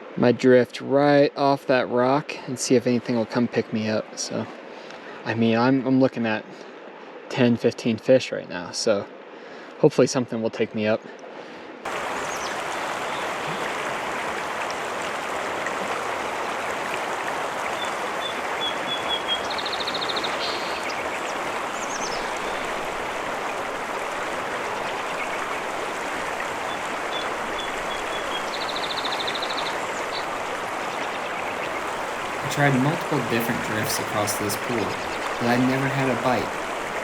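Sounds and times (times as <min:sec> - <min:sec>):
river rushing over rocks: 0:11.9 - 0:16.1, 0:31.6 - 0:37.0
high chirping calls: 0:31.6 - 0:37.0.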